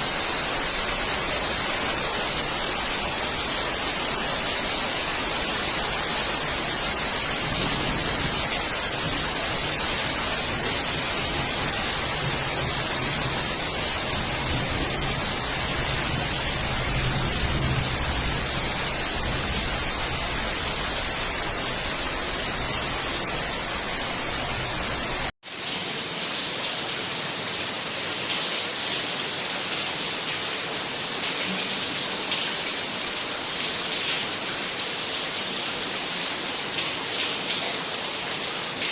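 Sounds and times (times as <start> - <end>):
steady rain falling: 0.0 - 38.9
raindrops pattering: 25.4 - 38.9.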